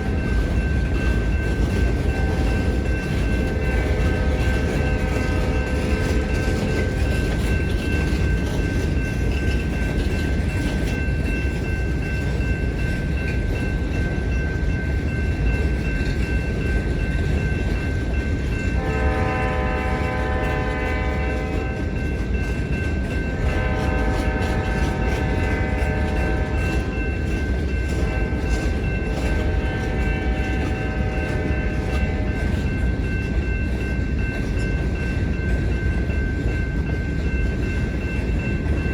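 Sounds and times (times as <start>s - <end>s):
diesel locomotives rumbling: 0.0s - 38.9s
train horn blasts: 3.6s - 7.0s, 18.8s - 21.9s, 23.3s - 27.0s, 27.9s - 32.8s.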